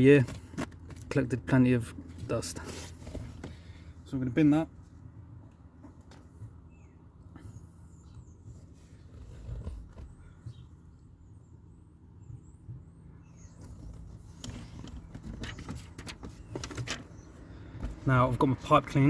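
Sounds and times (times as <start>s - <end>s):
handling knocks and rustling: 0.0s - 3.9s, 13.4s - 19.0s
faint bird chirping: 6.4s - 18.3s.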